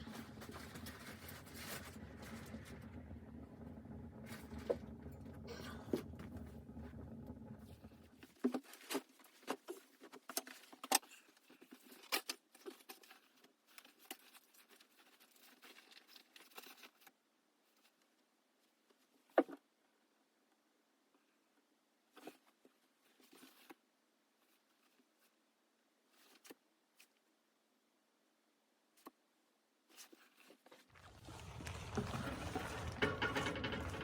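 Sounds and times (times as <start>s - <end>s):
low rumble: 0.0s - 8.2s, 31.0s - 34.0s.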